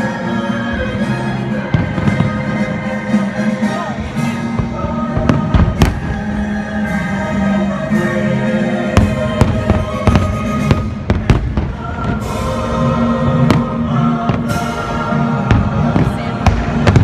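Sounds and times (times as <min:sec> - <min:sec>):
orchestral soundtrack music: 0:00.0 - 0:17.0
fireworks bangs and booms: 0:01.7 - 0:03.0, 0:04.6 - 0:06.6, 0:09.0 - 0:12.6, 0:13.4 - 0:17.0.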